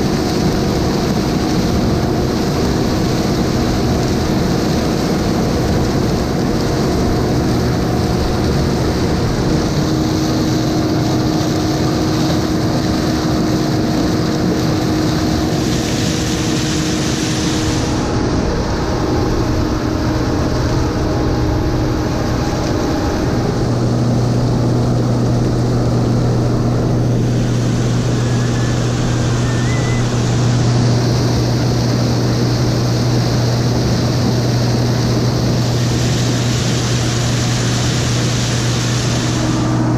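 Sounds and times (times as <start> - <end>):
combine harvester droning: 0.0 - 39.9
low hum: 0.0 - 39.9.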